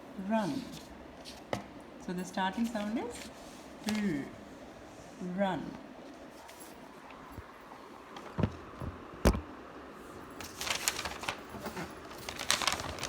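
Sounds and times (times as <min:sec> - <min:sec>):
clattering and rustling: 0:10.4 - 0:13.0.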